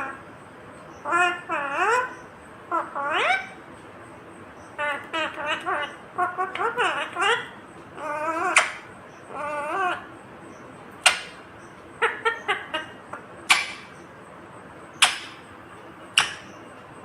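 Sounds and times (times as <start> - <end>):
parakeet chattering chirps: 0.8 - 3.7, 4.5 - 16.8
parakeet screeching: 1.0 - 3.6, 4.8 - 10.1, 12.0 - 14.0.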